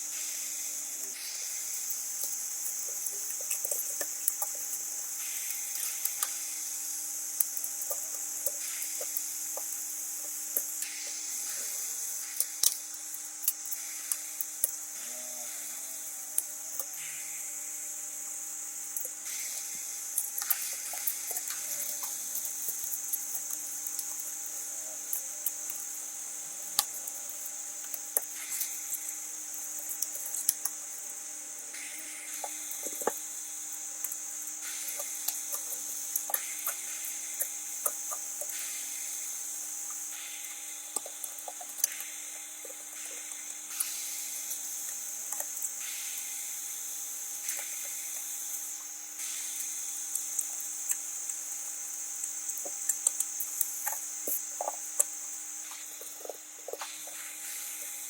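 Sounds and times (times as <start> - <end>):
steady high hiss: 0.0 - 58.0
small tools tapping and scraping: 40.9 - 45.9, 52.2 - 58.0.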